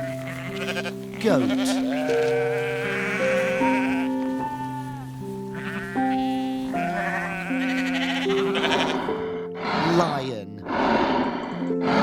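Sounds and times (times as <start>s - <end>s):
background music with held notes: 0.0s - 12.0s
goat bleating: 0.1s - 9.2s.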